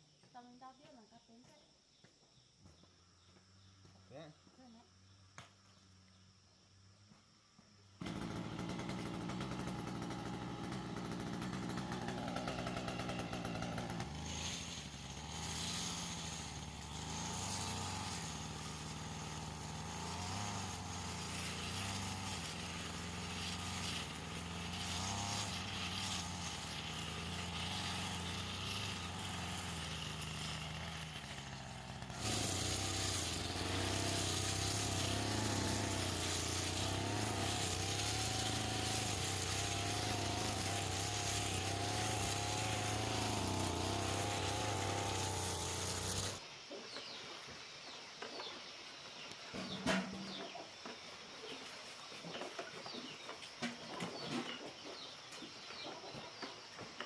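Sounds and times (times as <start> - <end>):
small petrol engine running: 8.0 - 46.4.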